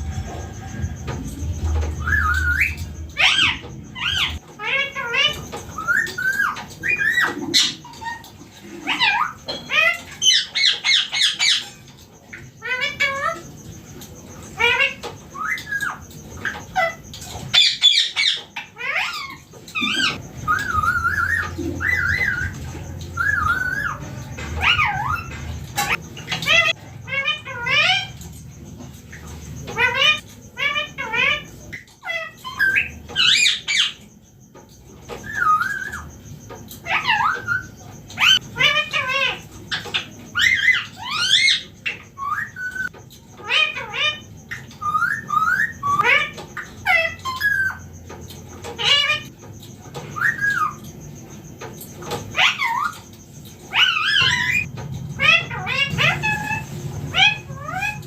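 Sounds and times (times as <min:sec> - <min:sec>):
parakeet chirps and squawks: 0:01.5 - 0:58.0
parakeet warbling whistles: 0:23.2 - 0:24.0.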